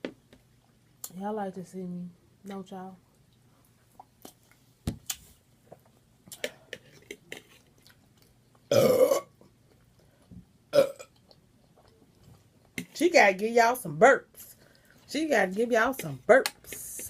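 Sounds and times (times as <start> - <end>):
woman burping: 8.7 - 9.4, 10.7 - 11.1.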